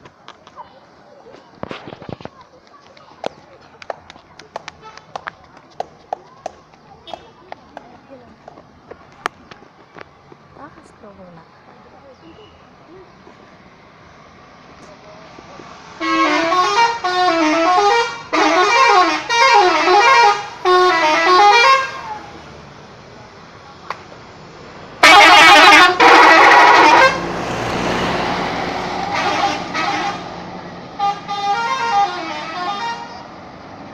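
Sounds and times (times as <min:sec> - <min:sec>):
bus musical horn tune: 0:16.0 - 0:22.2, 0:25.0 - 0:27.3, 0:29.0 - 0:33.4.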